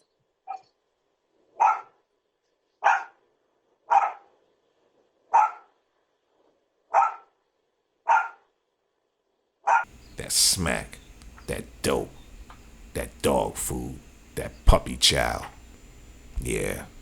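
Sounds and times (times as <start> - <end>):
dog barking: 1.6 - 2.0, 2.8 - 3.2, 3.9 - 4.3, 5.3 - 5.8, 6.9 - 7.4, 8.0 - 8.5, 9.6 - 9.9.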